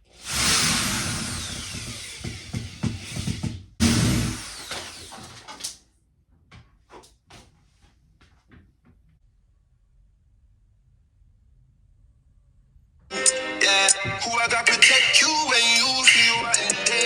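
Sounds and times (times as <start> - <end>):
power drill drilling into wall: 0.0 - 5.8.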